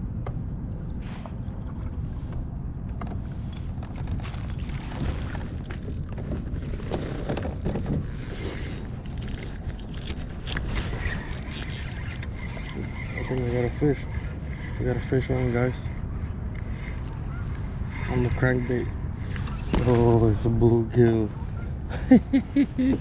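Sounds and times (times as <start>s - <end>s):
wind rumble on microphone: 0.0s - 23.0s
paddle splashes and hull knocks: 1.1s - 9.0s.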